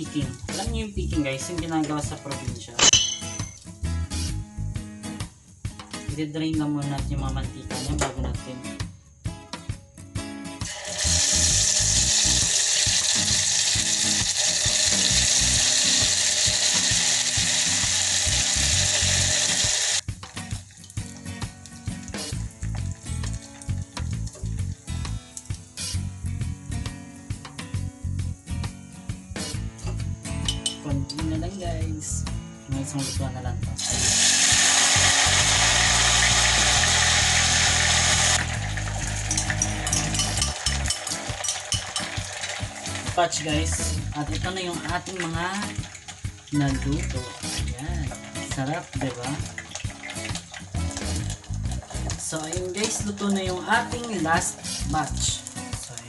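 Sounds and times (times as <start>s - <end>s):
batter deep-frying in hot oil: 10.6s - 28.7s, 33.7s - 56.0s
background music with a beat: 20.0s - 30.6s.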